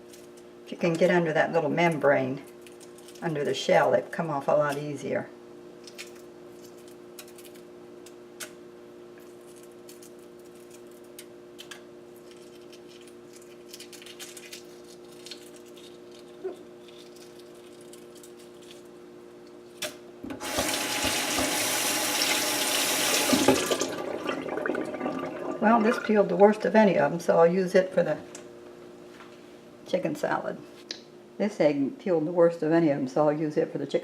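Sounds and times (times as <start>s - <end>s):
eggshell being peeled: 5.8s - 21.8s
steady hum: 14.4s - 34.0s
faucet water running into sink: 20.4s - 26.2s.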